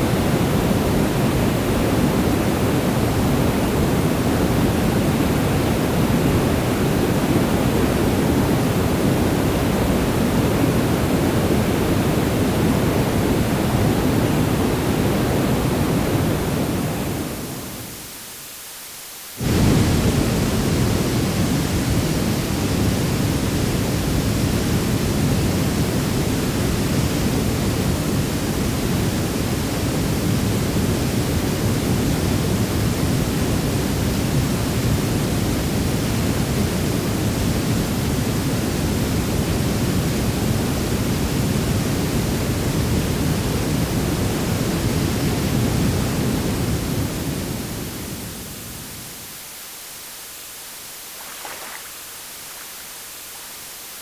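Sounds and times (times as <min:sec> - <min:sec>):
faint hiss: 0:00.0 - 0:54.0
river water rushing: 0:50.8 - 0:53.9.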